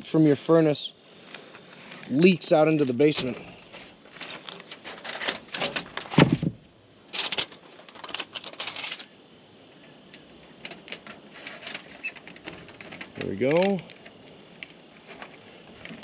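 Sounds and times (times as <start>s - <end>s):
foil tape crinkling: 1.3s - 6.4s, 7.0s - 9.2s, 10.6s - 16.0s.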